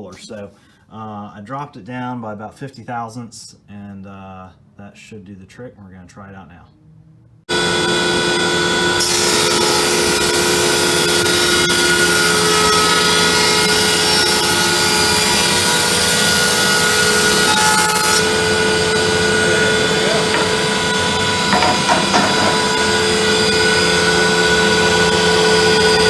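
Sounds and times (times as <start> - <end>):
jointer planer running: 7.5 - 26.0.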